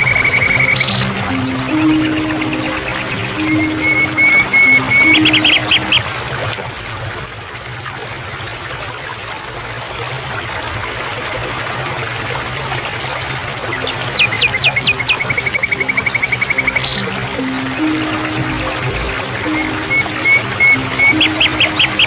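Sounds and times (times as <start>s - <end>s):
bird chirping: 0.0s - 6.0s, 13.7s - 22.0s
stream water trickling: 0.0s - 22.0s.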